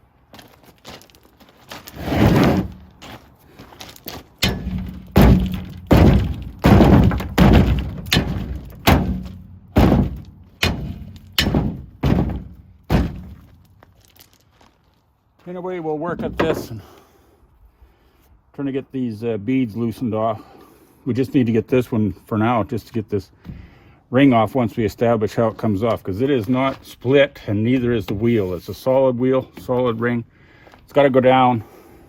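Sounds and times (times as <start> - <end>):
sledgehammer striking steel wheel: 4.4 - 13.6.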